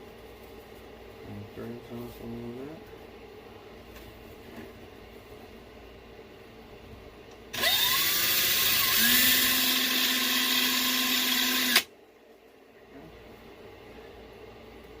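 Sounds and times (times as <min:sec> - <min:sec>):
power tool motor whining: 0:07.6 - 0:11.9.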